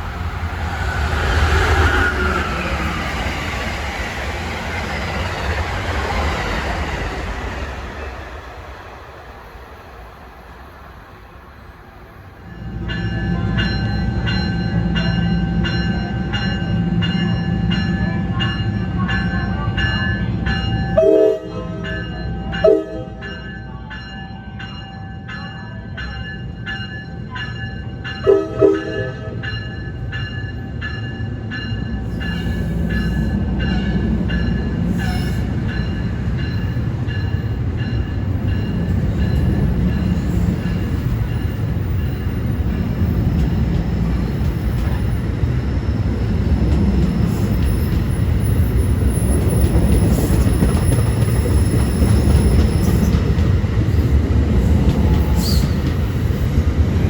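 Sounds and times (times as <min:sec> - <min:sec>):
train wheels rumbling on rail: 0:00.0 - 0:57.0
train horn blasts: 0:21.0 - 0:21.9, 0:22.6 - 0:23.2, 0:28.2 - 0:29.4.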